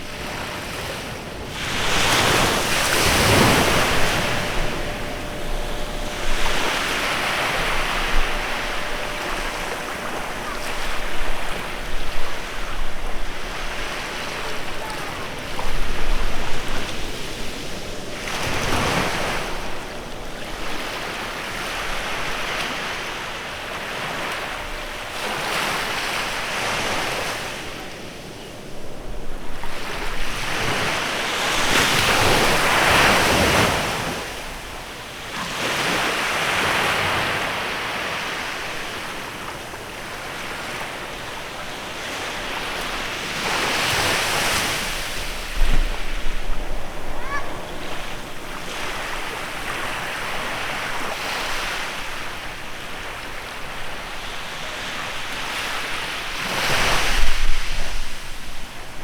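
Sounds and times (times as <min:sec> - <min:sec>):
wind buffeting microphone: 0:00.0 - 0:34.4, 0:41.0 - 0:51.5
waves breaking on beach: 0:00.0 - 0:59.0.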